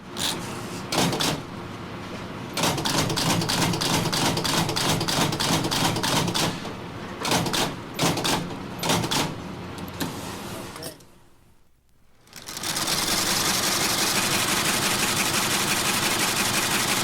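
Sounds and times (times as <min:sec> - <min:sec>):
rapid mechanical clicking clatter: 0:00.2 - 0:01.4, 0:02.6 - 0:06.6, 0:07.2 - 0:09.4, 0:12.3 - 0:17.0.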